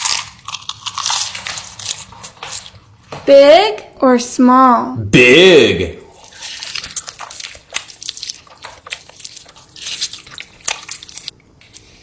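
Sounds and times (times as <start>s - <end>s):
wet chewing and mouth smacks: 6.1s - 12.0s.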